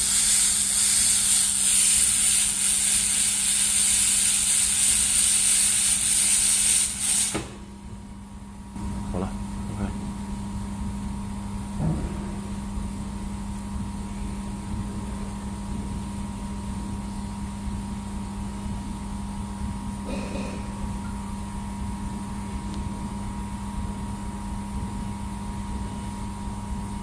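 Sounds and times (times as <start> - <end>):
welding machine hum: 0.0 - 8.0.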